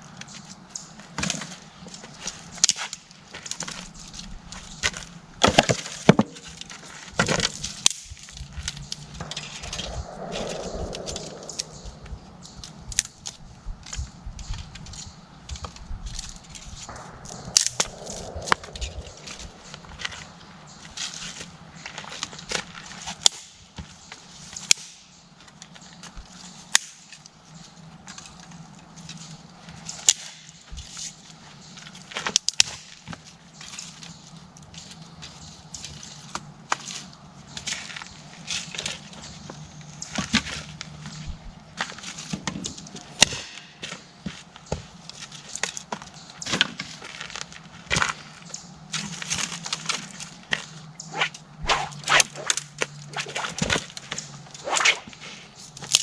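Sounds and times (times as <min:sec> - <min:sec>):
faint low hum: 0:16.2 - 0:21.0.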